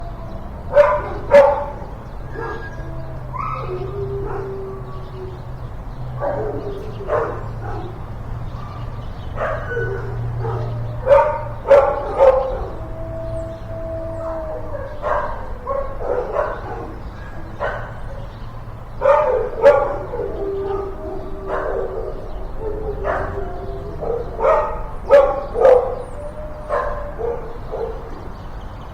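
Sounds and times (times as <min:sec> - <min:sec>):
dogs barking and yipping: 0:00.0 - 0:28.9
dog whining: 0:00.8 - 0:05.4.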